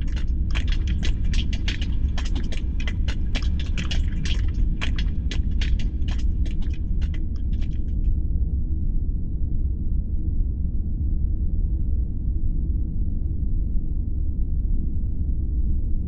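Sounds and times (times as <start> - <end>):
rapid short clicks: 0.0 - 8.0
deep rumbling hum: 0.0 - 8.1.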